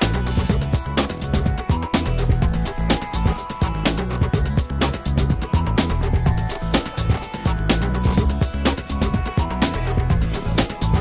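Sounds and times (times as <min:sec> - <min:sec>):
upbeat music with driving beat: 0:00.0 - 0:11.0.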